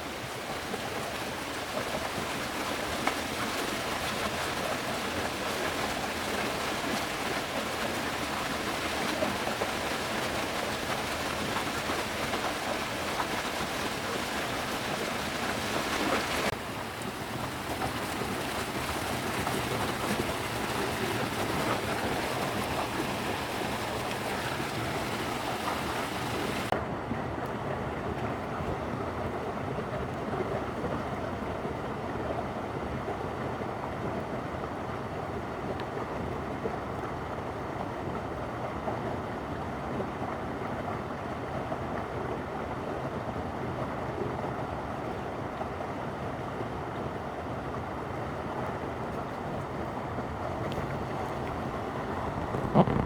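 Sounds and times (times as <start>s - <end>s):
stream water rushing: 0.0s - 26.8s, 38.7s - 53.0s.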